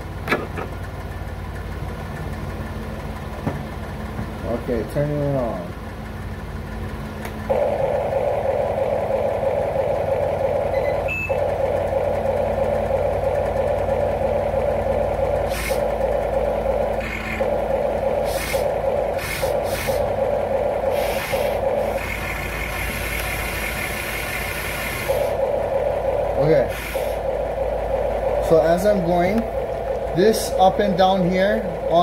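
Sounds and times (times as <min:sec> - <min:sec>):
simulated engine sound from speaker: 0:00.0 - 0:32.0
short noisy bursts: 0:15.1 - 0:32.0.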